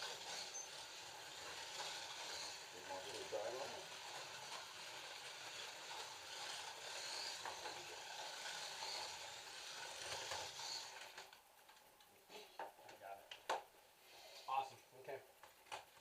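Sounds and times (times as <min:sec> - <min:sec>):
slot car motors whining: 0:00.0 - 0:11.4.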